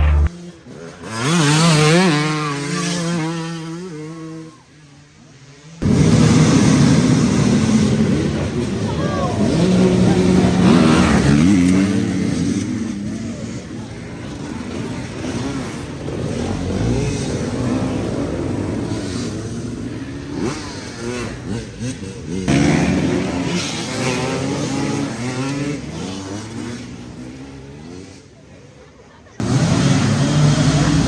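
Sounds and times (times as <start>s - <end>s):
dirt bike engine revving: 0.0s - 4.5s, 5.8s - 28.2s, 29.4s - 31.0s.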